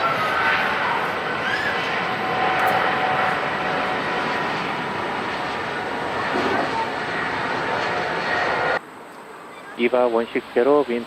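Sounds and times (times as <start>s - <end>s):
jet airliner landing: 0.0s - 11.0s.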